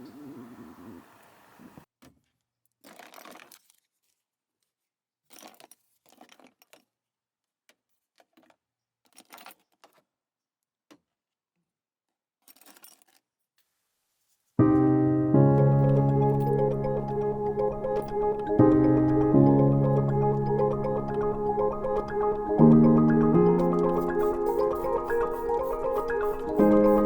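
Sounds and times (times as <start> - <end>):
faint rustling and clinking: 2.1 - 10.2, 12.2 - 14.6.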